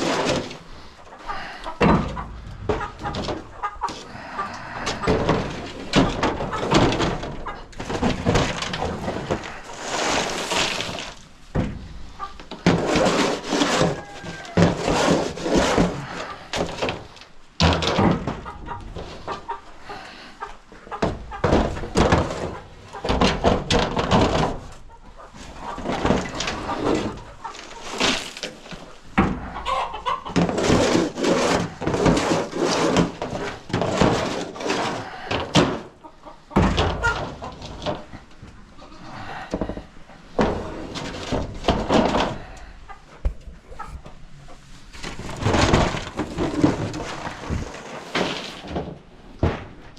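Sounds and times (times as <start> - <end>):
chickens clucking: 0.0 - 49.0
metal scraper scraping and knocking: 30.3 - 35.2.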